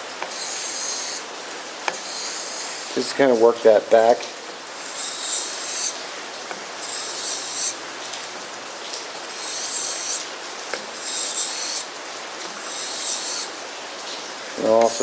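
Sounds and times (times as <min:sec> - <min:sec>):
knife scraping on sharpening stone: 0:00.3 - 0:01.3, 0:01.9 - 0:03.2, 0:04.8 - 0:06.0, 0:06.8 - 0:07.8, 0:09.3 - 0:10.2, 0:11.0 - 0:11.9, 0:12.5 - 0:13.5, 0:14.8 - 0:15.0.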